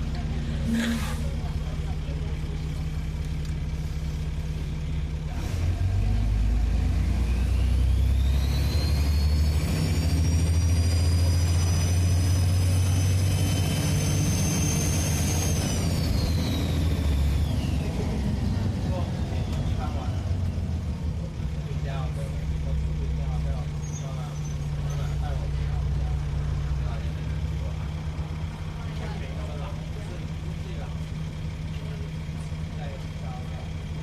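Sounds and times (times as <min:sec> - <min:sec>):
diesel bus engine drone: 0:00.0 - 0:34.0.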